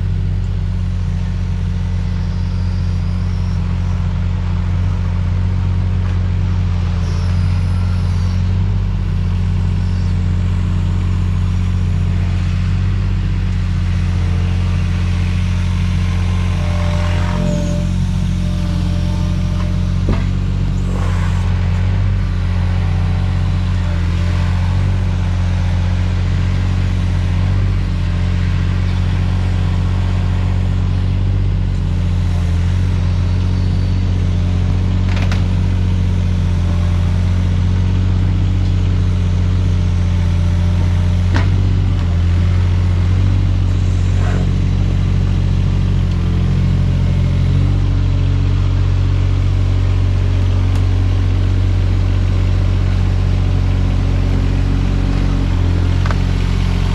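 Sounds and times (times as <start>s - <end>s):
diesel engine running: 0.0s - 56.9s.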